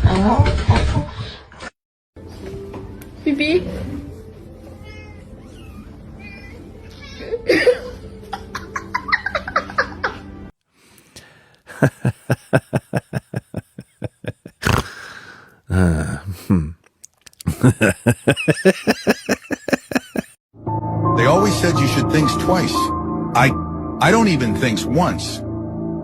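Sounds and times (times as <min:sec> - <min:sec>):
people laughing hard: 0:07.5 - 0:10.3, 0:11.7 - 0:14.7, 0:17.5 - 0:20.4.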